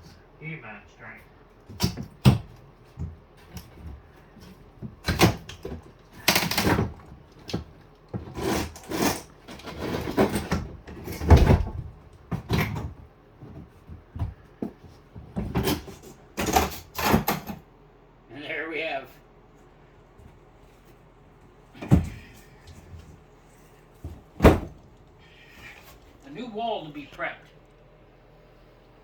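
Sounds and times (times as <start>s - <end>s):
wooden framing knocks and thuds: 1.7s - 8.4s, 9.8s - 17.6s, 21.8s - 23.1s, 24.0s - 25.0s.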